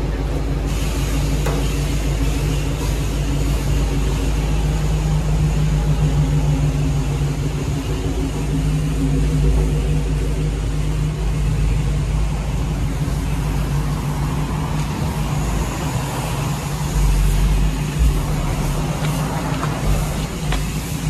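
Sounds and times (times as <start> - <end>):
vehicle engine idling: 0.0 - 21.0.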